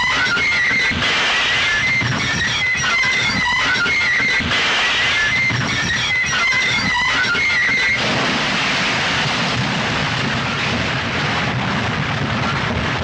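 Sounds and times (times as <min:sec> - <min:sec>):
car tyres screeching: 0:00.0 - 0:08.0
loud crash: 0:00.0 - 0:13.0.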